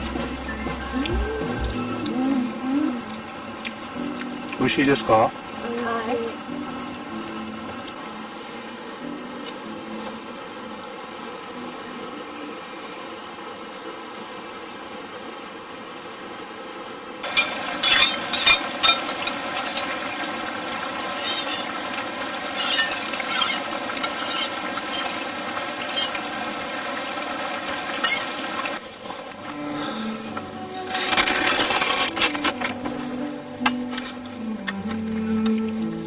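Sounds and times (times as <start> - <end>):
food frying with crackles: 0.0 - 36.0.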